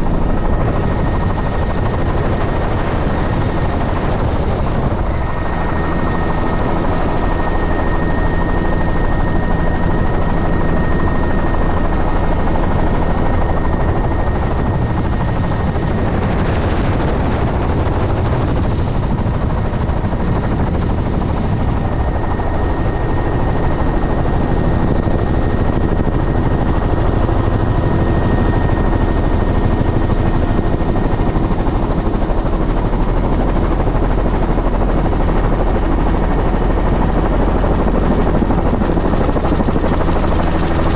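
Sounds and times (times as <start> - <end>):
high whine: 0.0 - 1.3
helicopter engine and rotor: 0.0 - 40.9.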